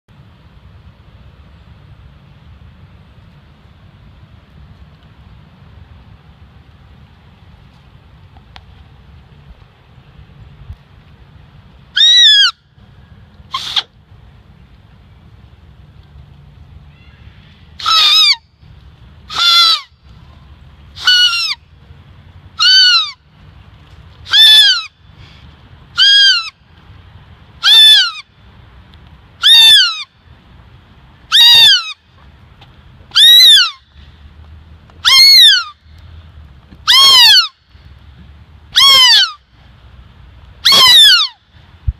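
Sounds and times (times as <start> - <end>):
shrill bird-like bark reed calls: 12.0 - 12.7, 13.5 - 13.9, 16.9 - 18.5, 19.3 - 20.0, 21.0 - 21.6, 22.6 - 23.2, 24.3 - 25.4, 26.0 - 26.6, 27.6 - 28.3, 29.4 - 30.1, 31.3 - 32.0, 33.1 - 34.0, 35.0 - 35.8, 36.9 - 37.6, 38.7 - 39.4, 40.6 - 41.4.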